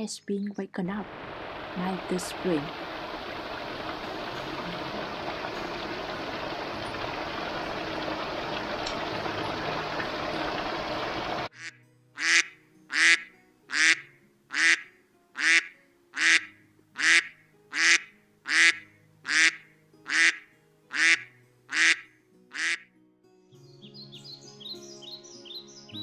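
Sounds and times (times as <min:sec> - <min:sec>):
soft background music: 0:03.6 - 0:10.8, 0:11.5 - 0:26.0
high birdsong chirps: 0:23.6 - 0:26.0.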